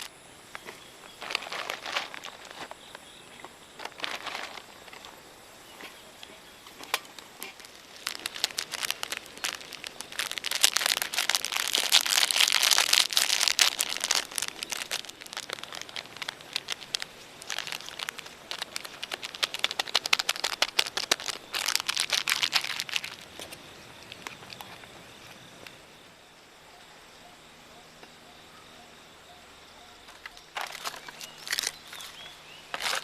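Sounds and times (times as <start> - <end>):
material crinkling and rustling: 0.6 - 24.9, 30.6 - 33.0.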